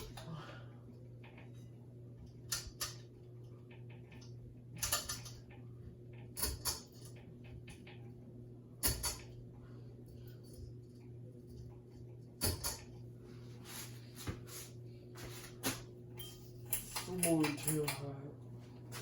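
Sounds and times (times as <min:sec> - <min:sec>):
ceiling fan motor hum: 0:00.0 - 0:19.0
fan clicks: 0:16.7 - 0:18.3.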